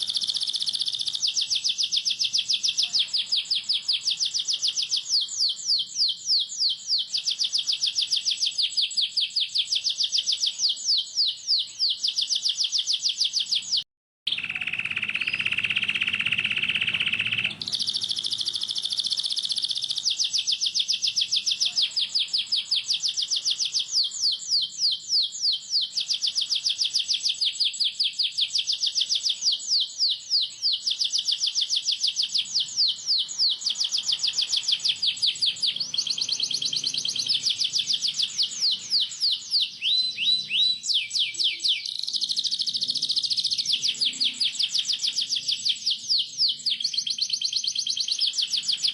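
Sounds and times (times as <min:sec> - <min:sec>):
low buzzing birdsong: 0:00.0 - 0:07.8, 0:14.3 - 0:25.9, 0:32.0 - 0:48.9
canary singing rapid trills: 0:00.0 - 0:48.9.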